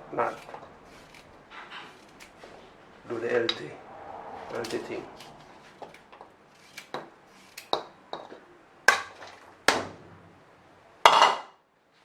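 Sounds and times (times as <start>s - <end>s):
utensils clinking on pots and dishes: 11.1s - 11.5s.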